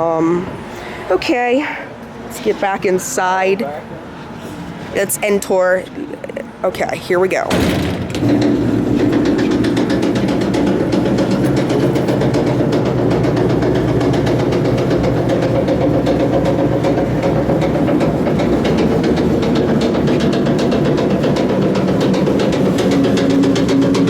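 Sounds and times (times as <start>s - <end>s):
platform rattling: 6.2s - 24.0s
electric drive humming: 7.4s - 24.0s.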